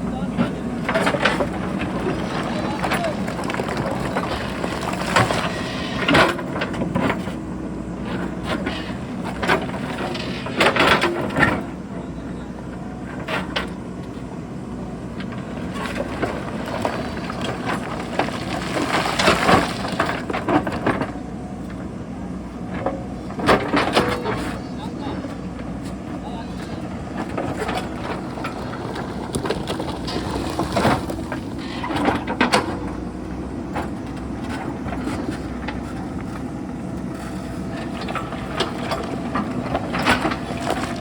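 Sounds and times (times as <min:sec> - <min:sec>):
diesel engine running under load: 0:00.0 - 0:41.0
rocks clattering against bucket: 0:00.4 - 0:07.2, 0:15.3 - 0:21.1, 0:26.5 - 0:33.1, 0:37.2 - 0:41.0.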